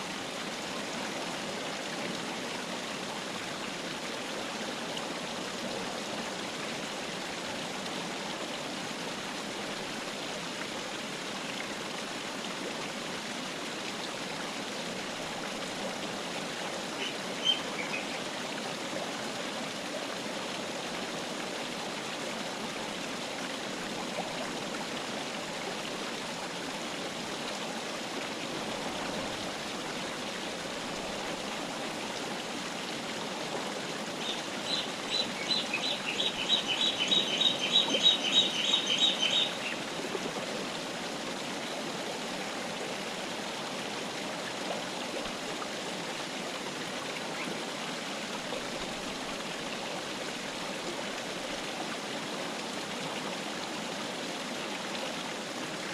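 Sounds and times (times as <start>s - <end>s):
river flowing: 0.0s - 55.9s
bird singing high notes: 34.7s - 39.8s.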